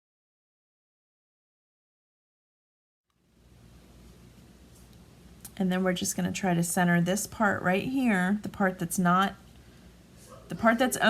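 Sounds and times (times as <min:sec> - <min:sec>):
low steady hum: 0:03.1 - 0:11.0.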